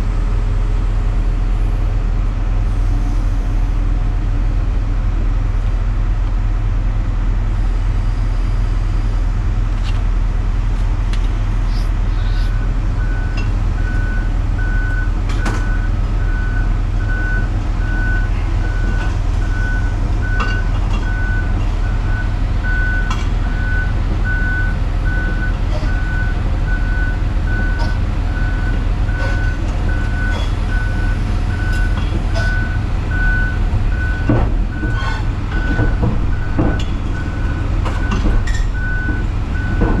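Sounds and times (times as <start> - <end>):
excavator diesel engine running: 0.0 - 40.0.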